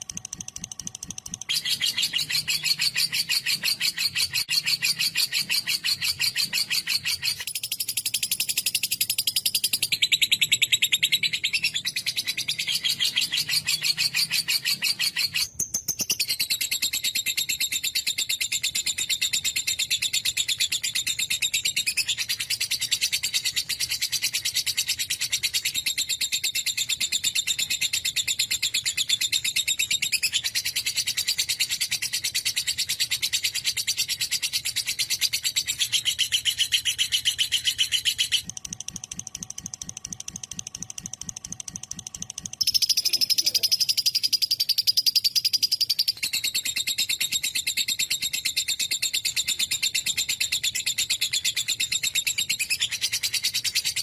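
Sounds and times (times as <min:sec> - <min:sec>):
lovebirds chattering: 0:42.6 - 0:45.9.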